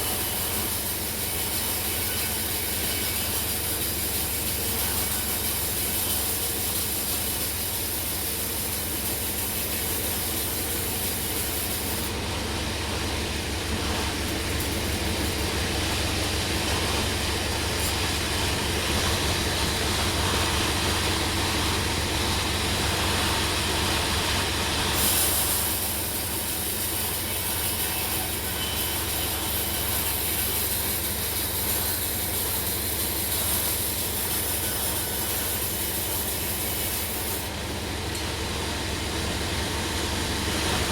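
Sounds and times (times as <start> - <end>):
low motor hum: 10.8 - 25.1.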